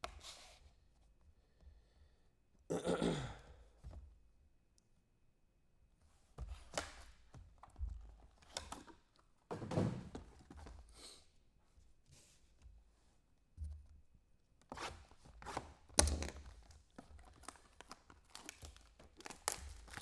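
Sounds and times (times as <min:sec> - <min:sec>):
packaging rustling: 0:17.1 - 0:20.0.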